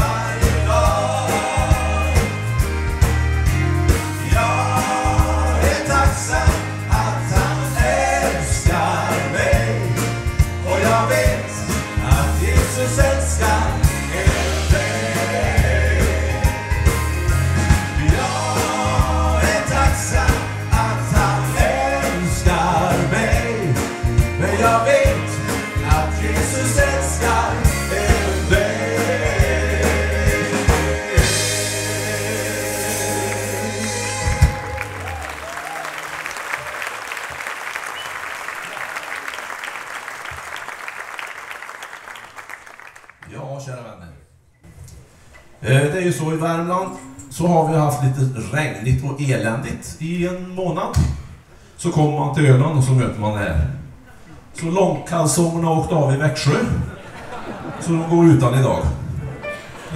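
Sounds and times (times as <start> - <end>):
person singing: 0.0 - 2.7, 4.2 - 16.8, 17.9 - 35.2
live band playing: 0.0 - 37.2, 59.0 - 59.9.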